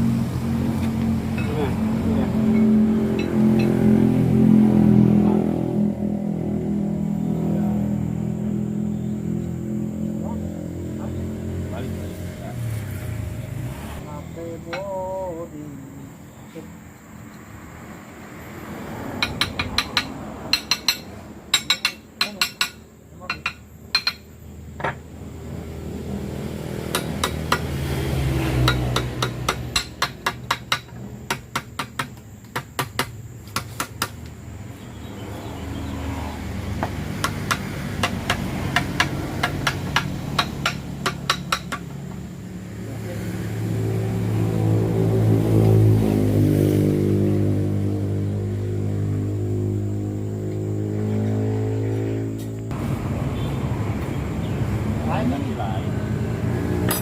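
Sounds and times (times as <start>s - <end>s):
engine running: 0.0s - 16.0s
hammer tapping on steel: 19.2s - 24.3s, 28.6s - 34.1s, 37.2s - 41.9s.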